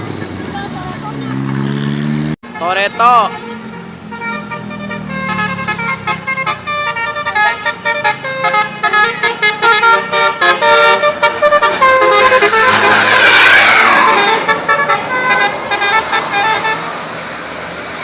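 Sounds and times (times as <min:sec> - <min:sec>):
bus musical air horn tune: 0:02.5 - 0:13.2, 0:14.0 - 0:16.9.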